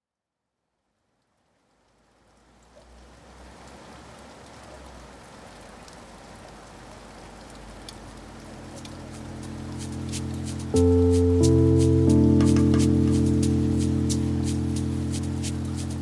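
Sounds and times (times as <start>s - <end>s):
rain: 0.6s - 16.0s
raindrops ticking: 3.4s - 16.0s
low steady music notes: 8.0s - 16.0s.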